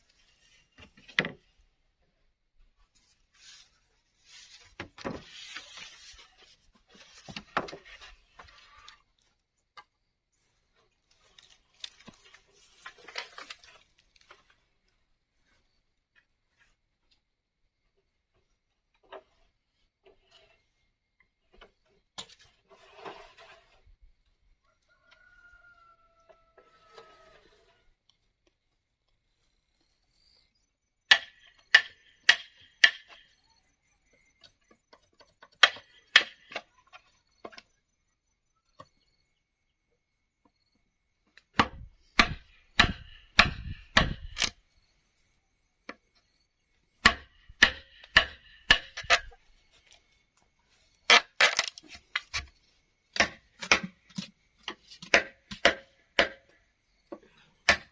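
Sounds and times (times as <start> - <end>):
hammer driving nails: 41.6 - 44.5, 47.0 - 49.4.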